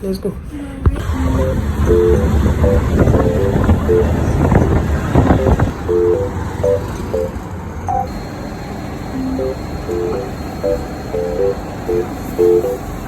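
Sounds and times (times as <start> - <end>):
plucked background music: 1.1 - 7.3, 7.9 - 8.1, 9.2 - 12.8.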